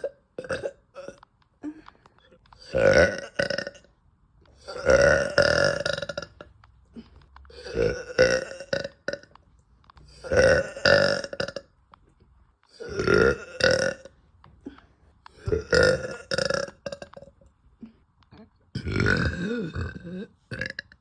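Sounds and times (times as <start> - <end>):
woman burping: 0.0 - 1.9, 2.6 - 3.9, 4.6 - 9.3, 10.1 - 11.7, 12.8 - 14.8, 15.4 - 21.0.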